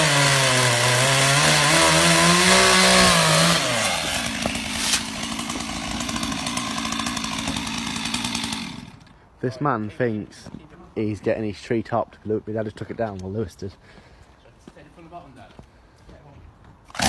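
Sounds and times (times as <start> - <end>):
chainsaw running: 0.0 - 9.2
sharp crack: 4.2 - 5.7.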